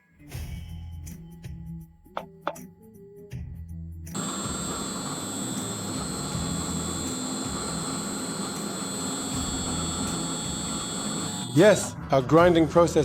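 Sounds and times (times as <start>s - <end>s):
grinding machine with motor whine: 4.2s - 11.9s.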